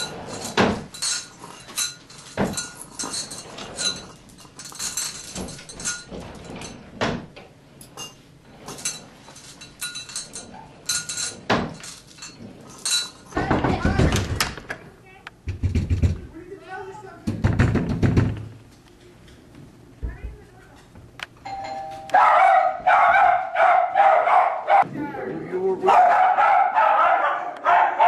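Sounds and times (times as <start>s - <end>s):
household clatter of knocks and clinks: 0.0s - 14.8s, 15.5s - 16.3s, 17.2s - 18.6s
short ringing tones: 21.4s - 22.3s.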